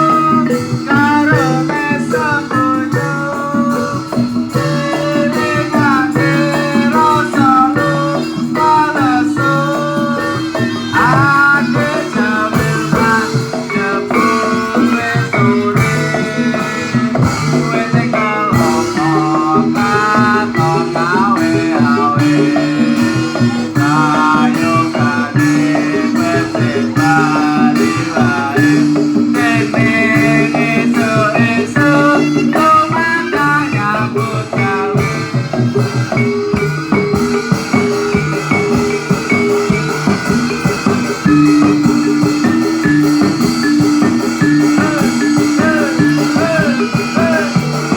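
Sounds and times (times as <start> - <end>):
loud dance music with steady beat: 39.5 - 47.9.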